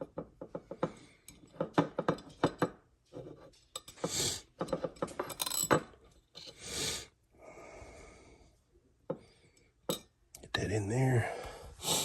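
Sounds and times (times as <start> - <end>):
person sniffing: 11.4 - 12.0.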